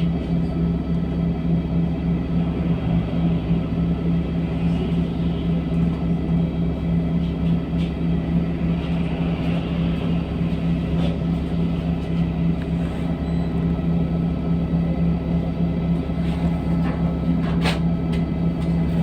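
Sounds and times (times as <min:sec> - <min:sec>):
bus engine drone: 0:00.0 - 0:19.0.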